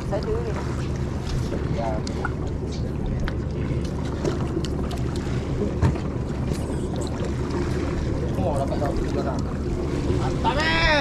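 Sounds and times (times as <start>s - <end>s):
boat engine humming: 0.0s - 11.0s.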